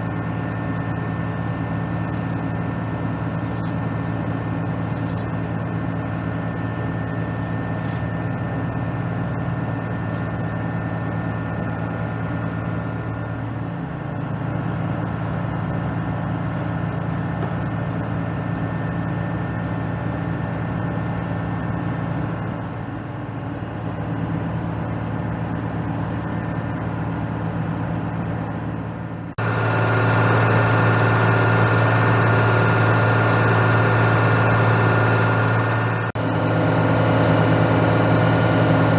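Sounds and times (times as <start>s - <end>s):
diesel engine idling: 12.0s - 38.9s.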